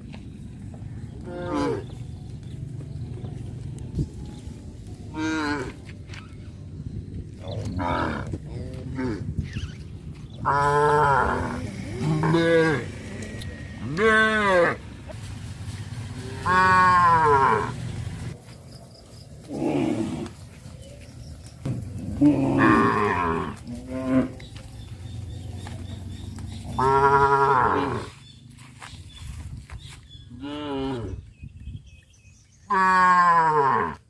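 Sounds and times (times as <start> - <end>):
cattle mooing: 1.2 - 2.0, 5.1 - 5.9, 7.6 - 9.3, 10.4 - 14.9, 16.2 - 17.9, 22.0 - 24.5, 26.7 - 28.1, 32.7 - 34.0.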